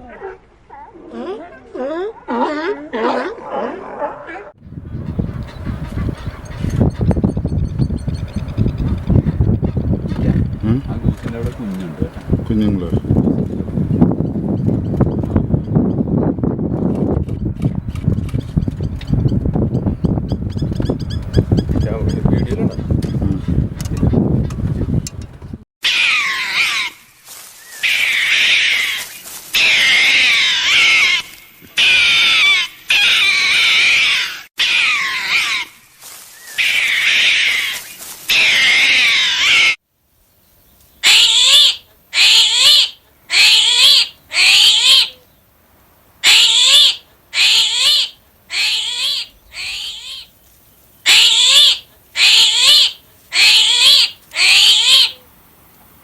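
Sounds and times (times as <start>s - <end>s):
animal high wavering cries: 25.8s - 27.0s, 27.7s - 35.8s, 36.4s - 39.8s, 41.0s - 45.2s, 46.2s - 50.3s, 51.1s - 55.2s
animal short calls: 41.0s - 45.2s, 46.2s - 50.3s, 51.1s - 55.2s.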